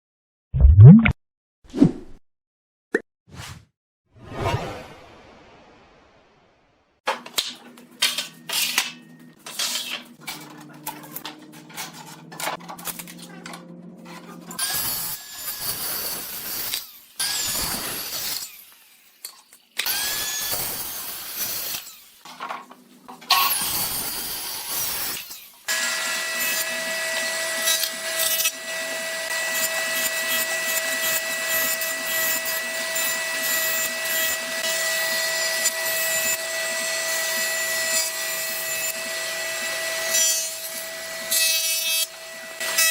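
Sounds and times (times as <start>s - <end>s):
power tool running steadily: 10.3s - 18.9s, 23.3s - 42.9s.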